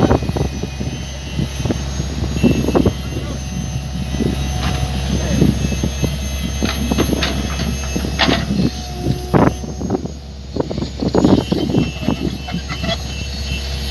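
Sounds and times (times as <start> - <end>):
excavator engine under load: 0.0 - 13.9
knocks and clanks: 4.2 - 9.5.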